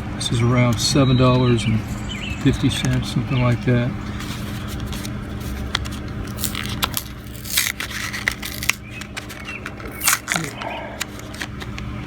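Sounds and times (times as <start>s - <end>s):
plastic and cardboard crinkling: 2.8s - 12.0s.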